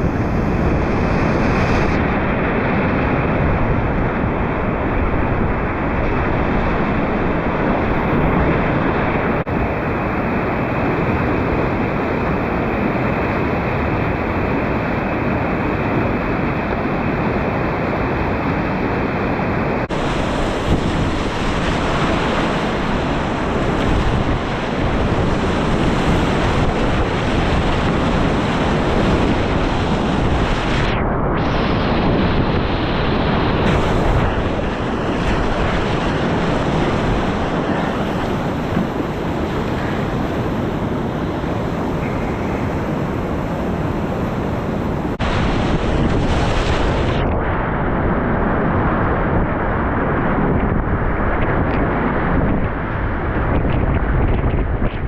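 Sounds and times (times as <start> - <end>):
wind buffeting microphone: 0.0 - 55.0
rushing river rapids: 18.0 - 47.2.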